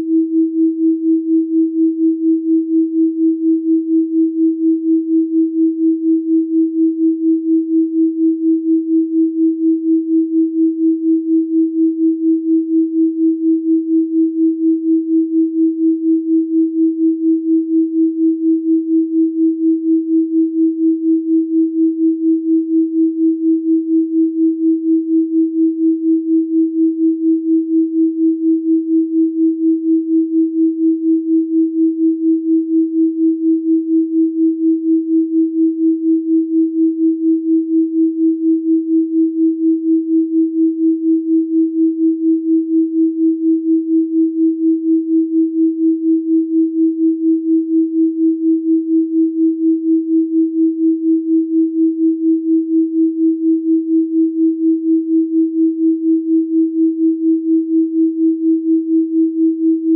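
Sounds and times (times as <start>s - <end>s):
pulsing pure sine tone: 0.0s - 59.9s.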